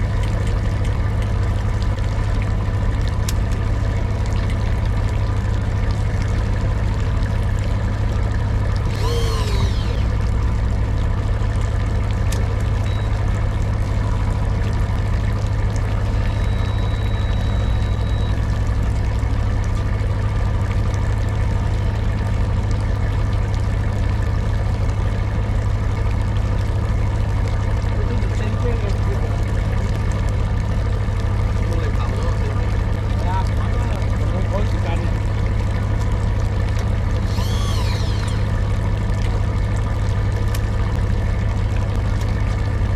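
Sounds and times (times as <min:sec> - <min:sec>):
boat engine humming: 0:00.0 - 0:42.9
brief falling pitch sound: 0:08.9 - 0:10.2, 0:37.3 - 0:38.5.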